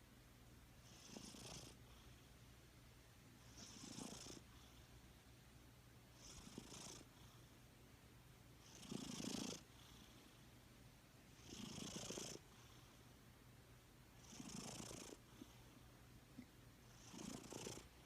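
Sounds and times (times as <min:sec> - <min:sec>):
cat purring and snoring: 0:00.8 - 0:02.1, 0:03.5 - 0:04.8, 0:06.2 - 0:07.4, 0:08.6 - 0:10.2, 0:11.4 - 0:12.8, 0:14.2 - 0:15.6, 0:16.9 - 0:18.0.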